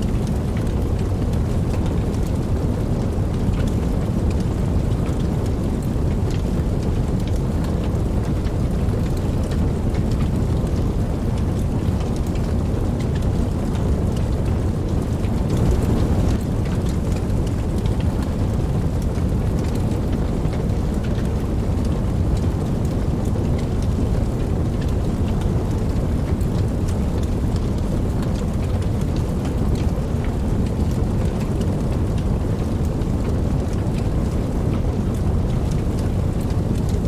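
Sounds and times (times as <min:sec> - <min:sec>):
raindrops ticking: 0:00.0 - 0:37.0
steady rain: 0:00.0 - 0:37.0
distant thunder rumbling: 0:14.9 - 0:17.2.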